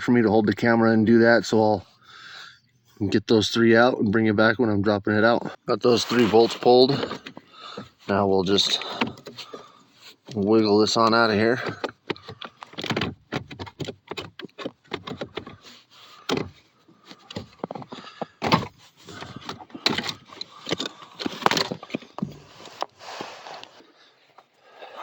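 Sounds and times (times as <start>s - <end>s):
knocks clicks and scrapes of metal parts: 6.1s - 9.6s, 10.2s - 22.9s.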